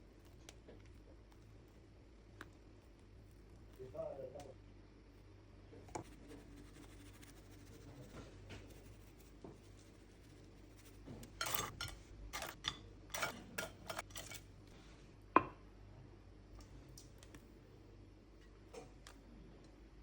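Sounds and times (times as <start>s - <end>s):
utensils and dishes clattering: 11.3s - 14.5s.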